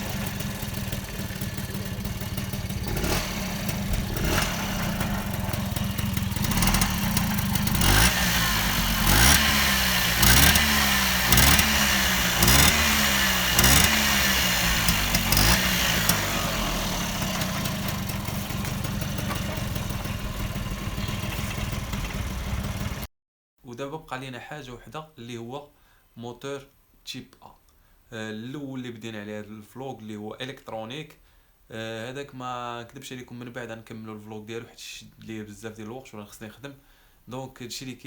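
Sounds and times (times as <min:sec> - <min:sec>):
moped engine idling and revving: 0:00.0 - 0:23.1.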